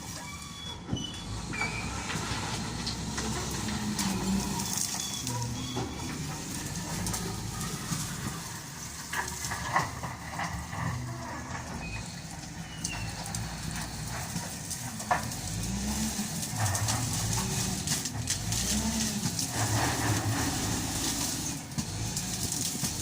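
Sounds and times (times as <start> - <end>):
diesel engine revving: 0.0 - 23.0
clanks and knocks: 4.7 - 15.8.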